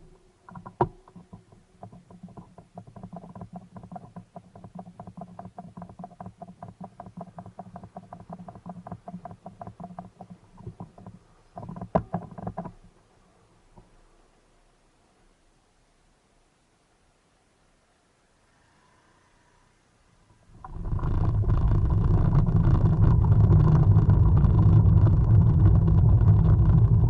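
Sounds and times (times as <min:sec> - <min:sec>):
low steady hum: 0:00.0 - 0:27.0
knocks: 0:00.5 - 0:12.8.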